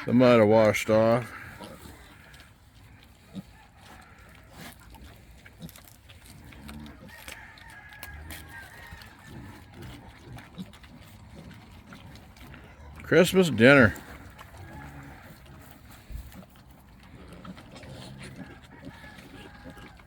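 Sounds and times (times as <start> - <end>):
chickens clucking: 6.5 - 20.0.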